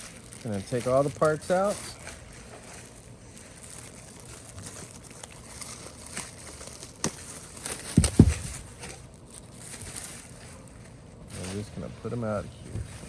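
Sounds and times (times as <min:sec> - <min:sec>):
packaging crinkling and rustling: 0:00.0 - 0:13.0
heavy thumps: 0:07.9 - 0:08.8.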